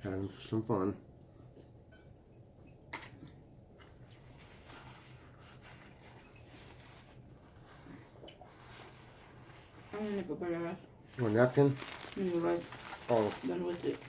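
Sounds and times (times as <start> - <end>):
people eating clicks and rustles: 0.0 - 0.7, 2.6 - 8.8, 11.2 - 14.0
low room hum: 0.0 - 14.0.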